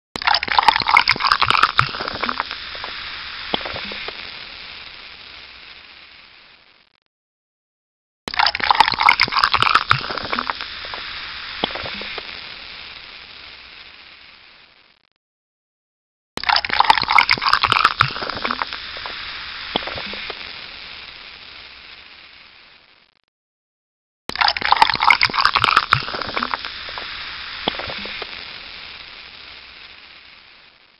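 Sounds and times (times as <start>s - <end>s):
fizzy drink bubbles fizzing: 0.2s - 5.7s, 8.3s - 13.6s, 16.4s - 21.6s, 24.3s - 30.7s.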